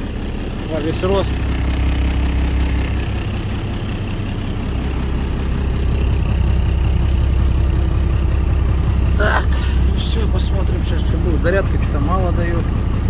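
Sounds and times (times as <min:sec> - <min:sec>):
diesel truck engine idling: 0:00.0 - 0:13.0.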